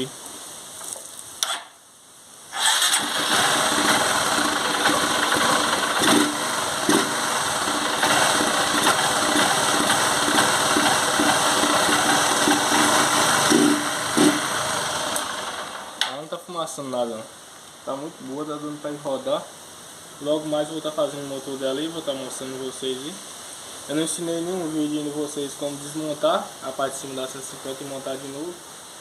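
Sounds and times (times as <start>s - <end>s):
motorcycle engine running: 2.7s - 16.0s
engine knocking: 2.8s - 15.8s.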